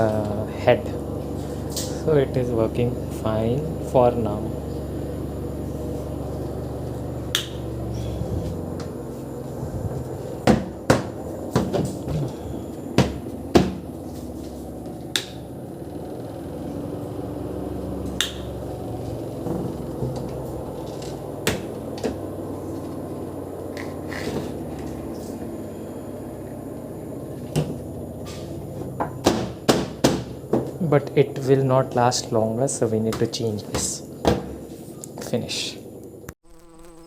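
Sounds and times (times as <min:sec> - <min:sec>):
low hum: 0:00.0 - 0:29.2.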